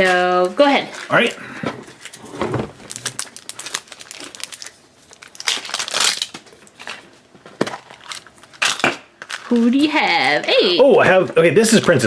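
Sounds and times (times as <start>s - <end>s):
plastic packaging crinkling: 2.0s - 7.1s, 7.7s - 9.7s.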